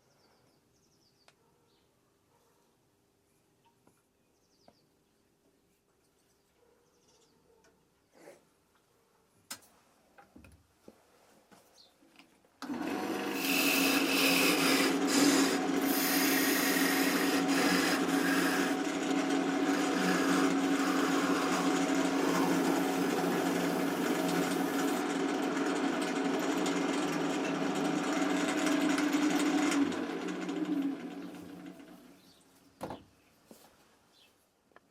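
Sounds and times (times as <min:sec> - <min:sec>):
power tool grinding: 0:12.6 - 0:32.2.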